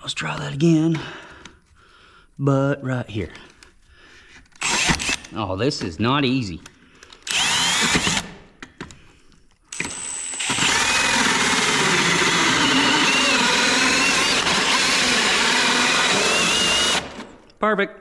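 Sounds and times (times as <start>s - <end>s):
power drill running: 4.6s - 5.3s, 7.2s - 8.4s, 9.7s - 17.5s.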